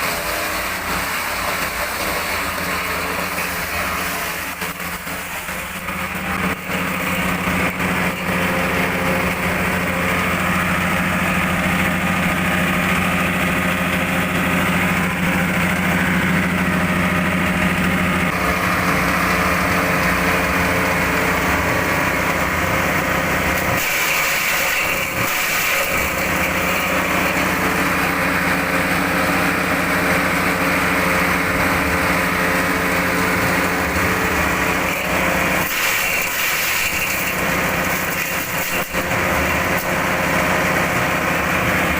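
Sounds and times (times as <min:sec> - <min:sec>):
chopping machine engine humming: 0:00.0 - 0:41.9.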